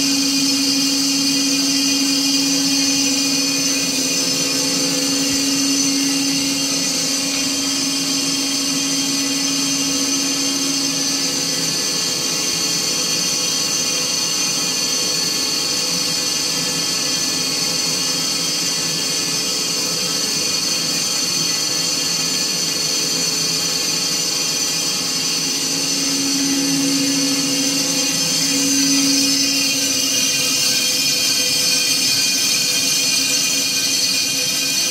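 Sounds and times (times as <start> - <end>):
band saw whining hum: 0.0 - 34.9
low hum: 25.4 - 30.7.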